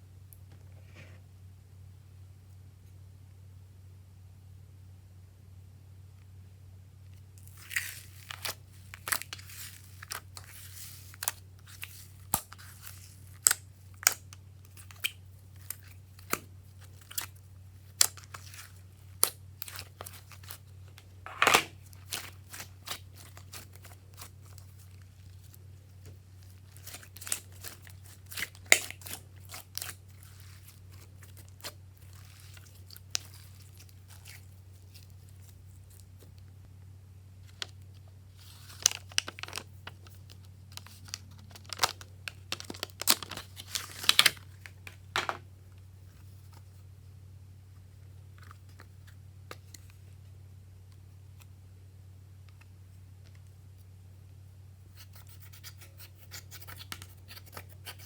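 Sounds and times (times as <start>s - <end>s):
crinkly rustling: 7.4s - 13.4s, 37.4s - 45.3s
slime popping and crackling: 26.7s - 34.4s.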